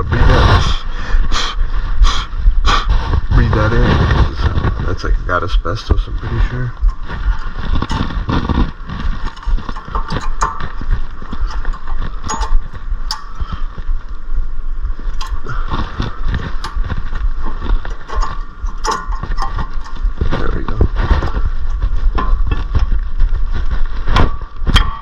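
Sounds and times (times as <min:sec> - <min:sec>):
low hum: 0:00.0 - 0:25.0
metallic clicks and scraping: 0:05.7 - 0:25.0.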